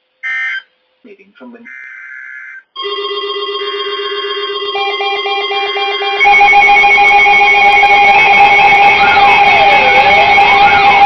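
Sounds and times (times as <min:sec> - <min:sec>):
loud alarm: 0:00.2 - 0:00.7, 0:01.7 - 0:11.0
siren-like wail: 0:00.2 - 0:00.7, 0:01.7 - 0:02.7, 0:03.9 - 0:11.0
steady alarm tones: 0:01.6 - 0:11.0
pulsed electronic beep: 0:01.7 - 0:02.7.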